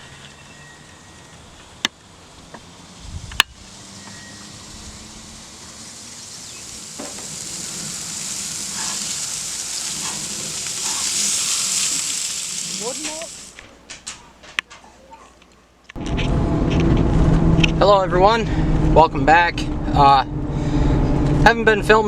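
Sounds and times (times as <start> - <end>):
food sizzling in a pan: 3.6 - 13.6.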